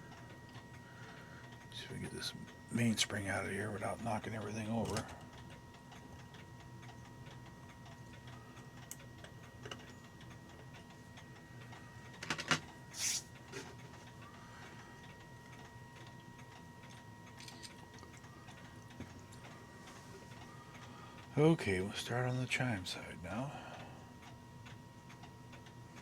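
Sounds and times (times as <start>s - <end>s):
metallic clicks of clock parts: 15.0s - 21.3s.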